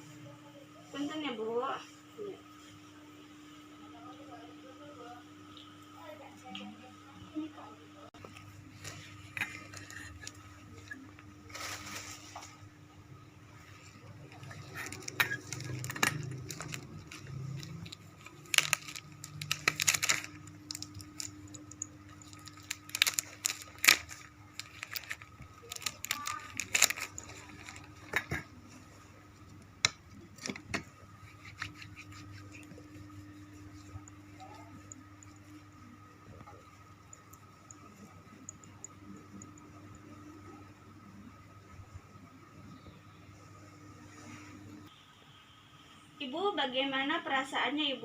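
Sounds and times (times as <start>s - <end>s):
small objects clicking and clattering: 14.3s - 28.4s.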